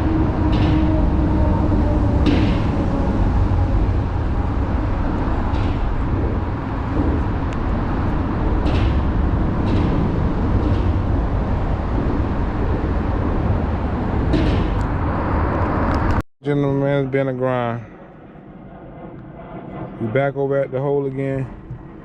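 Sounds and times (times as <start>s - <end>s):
outboard motor rumbling: 0.0s - 15.0s.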